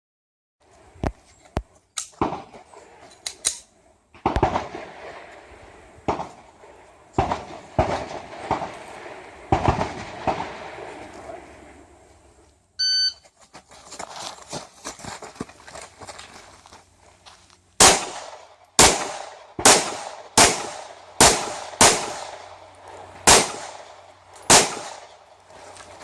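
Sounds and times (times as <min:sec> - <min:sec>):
electronic beep: 0:12.8 - 0:13.2.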